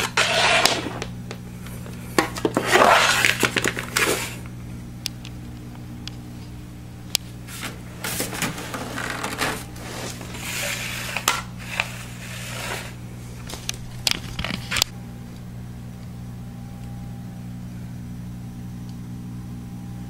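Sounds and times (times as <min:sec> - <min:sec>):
scraping and rustling: 0:00.0 - 0:01.1, 0:01.8 - 0:04.4, 0:07.4 - 0:14.9
steady low hum: 0:00.0 - 0:20.0.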